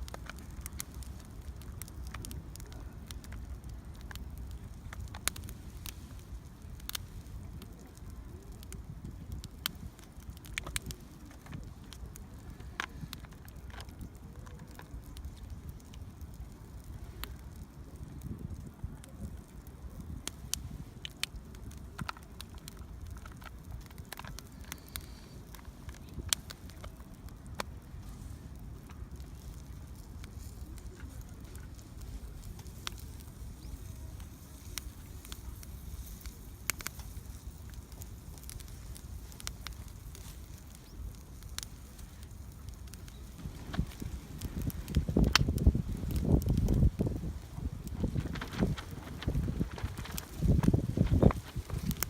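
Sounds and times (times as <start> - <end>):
fire popping: 0.0 - 52.0
wood fire crackling: 0.0 - 52.0.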